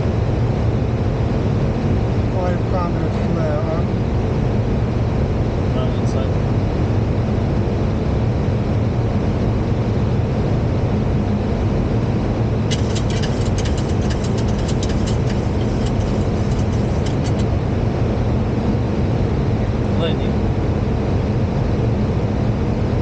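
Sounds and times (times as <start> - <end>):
airflow and engine hum: 0.0 - 23.0
rapid crackling clicks: 12.7 - 17.5.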